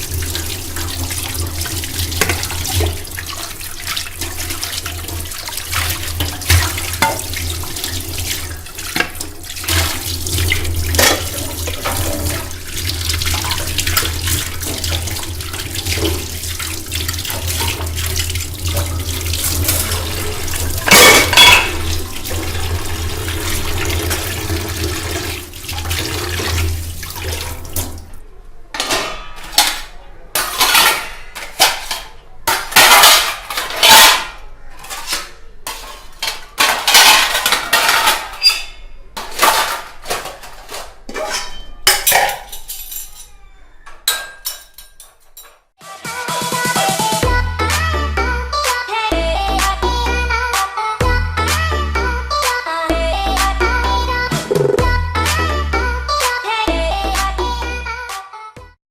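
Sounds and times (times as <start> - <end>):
tap water running into steel sink: 0.0 - 28.2
metal dishes clinking and knocking: 0.1 - 22.8, 28.7 - 45.7.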